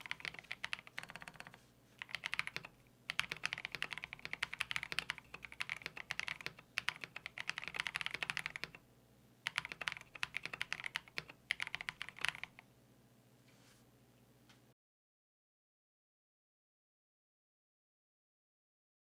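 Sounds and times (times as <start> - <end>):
fast typing on mechanical keyboard: 0.0 - 8.8, 9.4 - 12.6.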